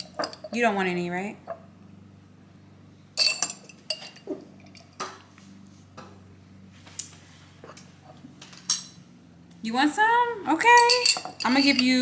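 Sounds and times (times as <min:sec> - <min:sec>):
utensil clinking on plates: 0:03.2 - 0:05.3, 0:08.4 - 0:09.0, 0:10.6 - 0:12.0.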